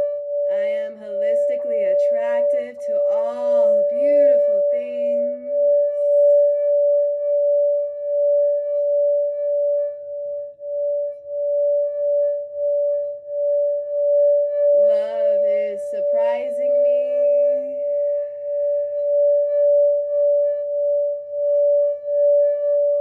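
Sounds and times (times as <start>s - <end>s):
singing bowl ringing tone: 0.0s - 23.0s
woman singing: 0.5s - 5.8s, 14.9s - 18.3s.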